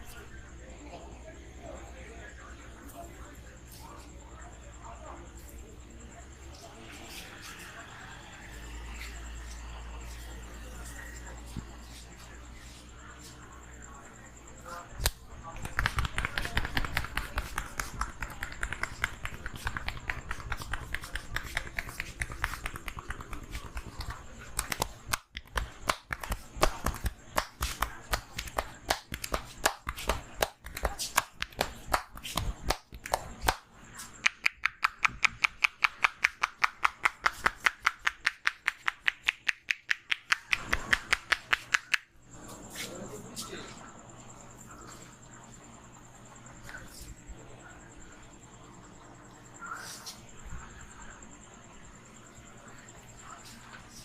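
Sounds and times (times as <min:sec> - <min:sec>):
hand strikes of head massage: 0:15.0 - 0:33.6
sharp slaps: 0:15.0 - 0:33.6.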